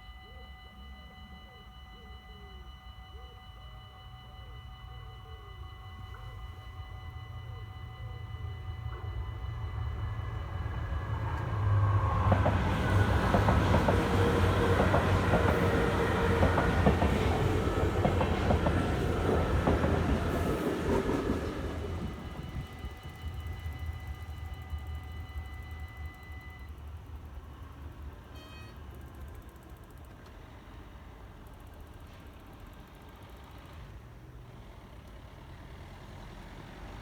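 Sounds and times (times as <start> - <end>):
crossing bells ringing: 0.0 - 29.2
train wheels clicking over rail joints: 10.6 - 23.9.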